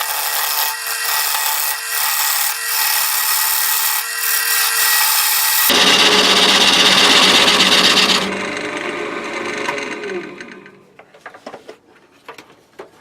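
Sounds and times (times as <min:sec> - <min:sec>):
lathe tool cutting wood: 0:00.0 - 0:10.8
lathe motor humming: 0:05.2 - 0:10.8.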